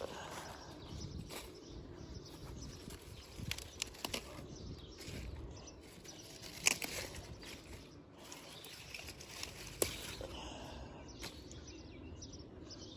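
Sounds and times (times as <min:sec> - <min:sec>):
leaves rustling: 0:00.0 - 0:11.6
stems snapping: 0:02.3 - 0:10.6, 0:11.2 - 0:11.6.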